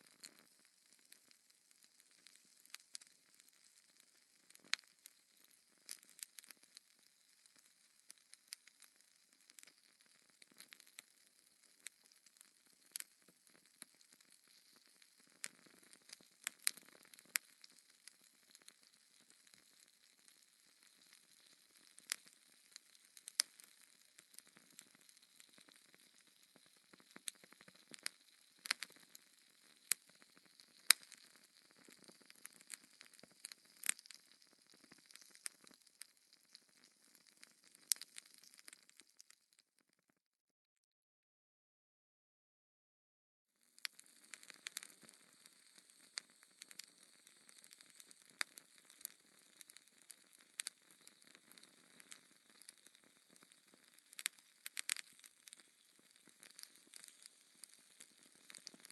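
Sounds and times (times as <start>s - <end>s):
wood fire crackling: 0.0s - 39.6s, 43.8s - 58.9s
soft fire hiss: 9.4s - 38.8s, 43.8s - 58.9s.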